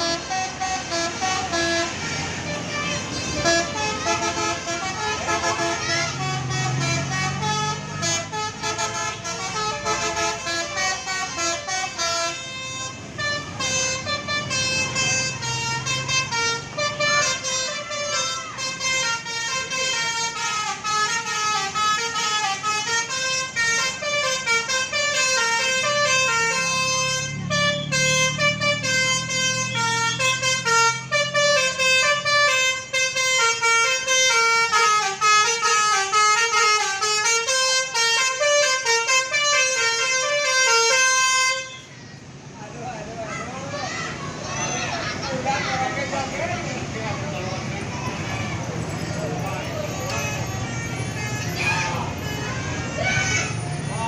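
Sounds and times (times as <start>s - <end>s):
musical bus horn: 0.0s - 42.0s, 46.6s - 54.0s.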